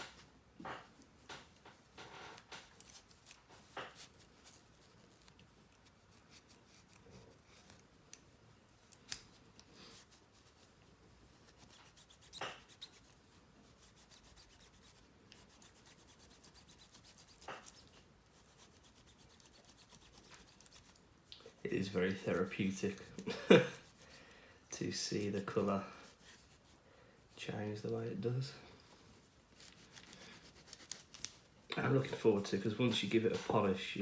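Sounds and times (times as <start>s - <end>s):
cloth rubbing on metal: 8.6s - 34.0s.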